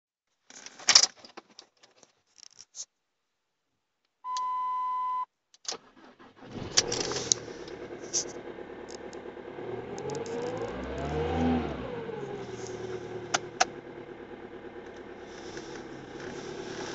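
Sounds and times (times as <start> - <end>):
electronic beep: 4.3 - 5.3
diesel engine starting: 5.7 - 16.9.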